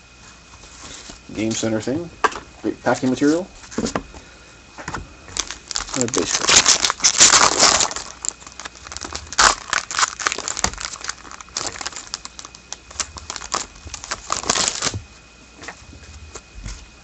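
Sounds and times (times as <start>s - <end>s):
cards being handled: 5.3s - 8.8s
foil wrappers crinkling: 5.3s - 16.6s.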